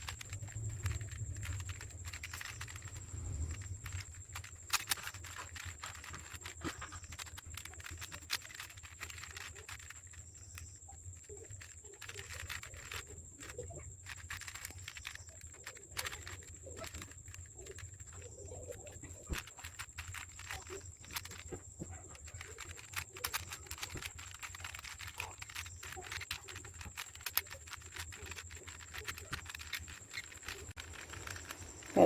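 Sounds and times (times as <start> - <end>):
steady low hum: 0.0 - 7.1
puzzle cube clicking: 0.0 - 32.0.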